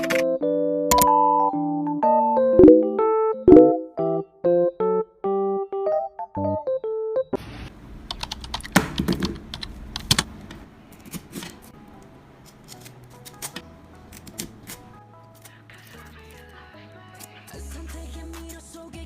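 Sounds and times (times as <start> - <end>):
short piano tune: 0.0 - 7.4
quiet background music: 10.8 - 19.0
packaging crinkling and clicking: 12.5 - 16.6.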